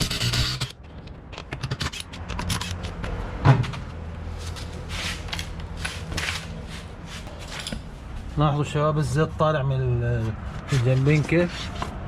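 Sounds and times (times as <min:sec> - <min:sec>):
tools clicking and knocking: 0:00.3 - 0:03.2.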